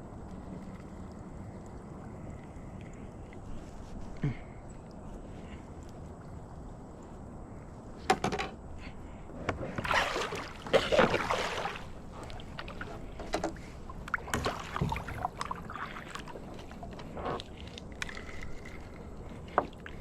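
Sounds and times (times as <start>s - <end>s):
water splashing: 9.7s - 20.0s.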